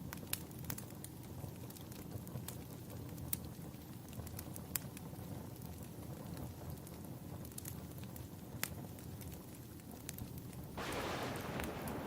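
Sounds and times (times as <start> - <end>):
wood fire crackling: 0.0 - 12.0
fire pop: 10.6 - 12.0
low rumble: 10.8 - 12.0.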